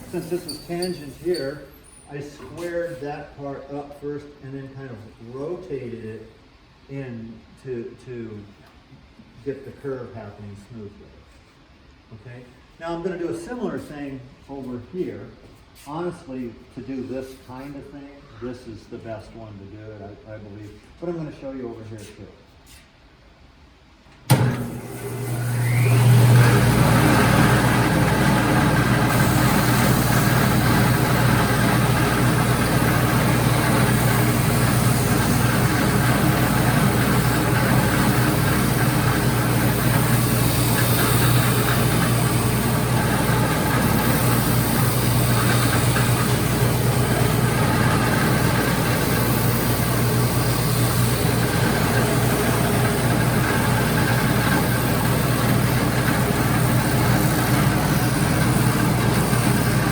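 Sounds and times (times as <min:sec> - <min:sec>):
electric disc sander running: 0:00.0 - 0:01.3, 0:24.3 - 0:59.9.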